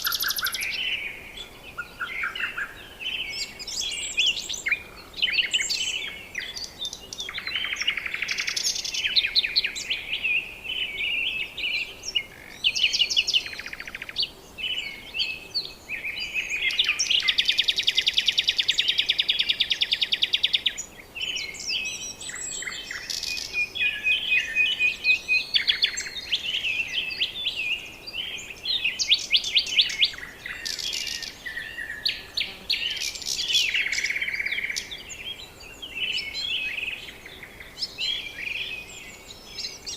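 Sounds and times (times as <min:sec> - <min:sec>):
birds chirping and whistling: 0:00.0 - 0:39.9.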